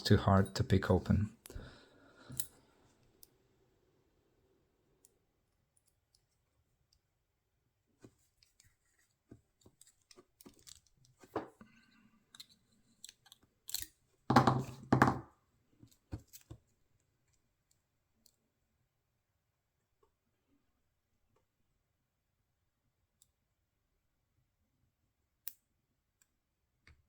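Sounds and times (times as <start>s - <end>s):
lock pick clicking and scraping: 12.4s - 14.0s
padlock knocking and rattling: 13.7s - 15.3s.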